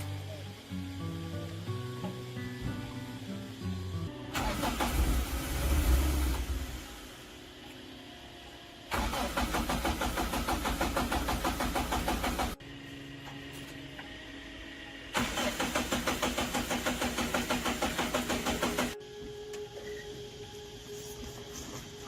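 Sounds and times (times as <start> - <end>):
engine chugging: 8.9 - 12.7, 14.4 - 19.0.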